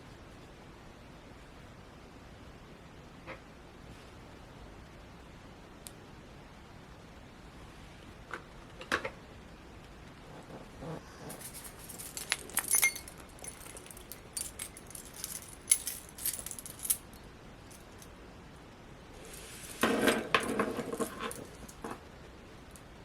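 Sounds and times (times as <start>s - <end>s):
keychain jingling and clinking: 11.2s - 18.1s.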